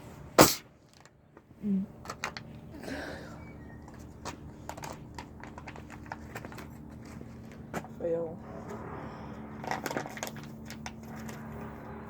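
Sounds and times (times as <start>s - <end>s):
container bursting with loud bang: 0.4s - 0.6s
small clicks and rustling: 3.8s - 8.0s.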